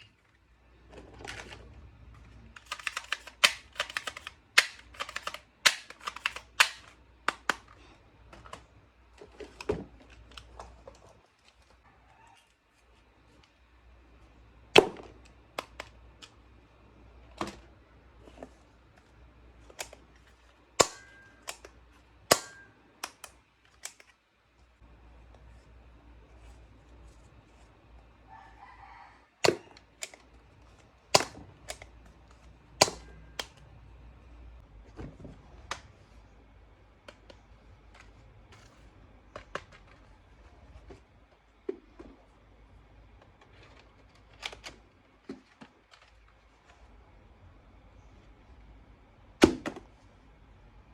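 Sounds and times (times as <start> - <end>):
plastic toys clicking and knocking: 0.9 - 11.6.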